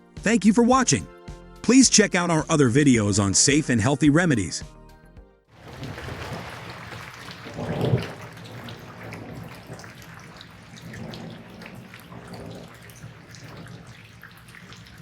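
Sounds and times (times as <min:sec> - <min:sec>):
running water: 0:05.5 - 0:15.0
water drips and splashes: 0:05.5 - 0:15.0.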